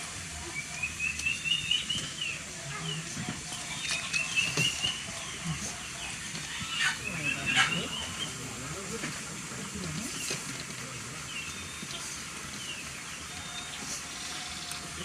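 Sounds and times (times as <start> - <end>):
bird singing warbling trills: 0.4 - 8.4, 11.3 - 15.0.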